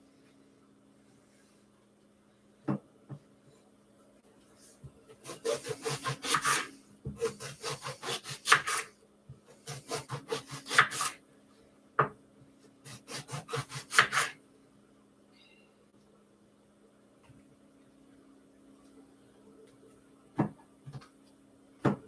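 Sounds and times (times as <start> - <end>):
knife cutting on cutting board: 5.2 - 8.9, 9.7 - 11.2, 12.9 - 14.4.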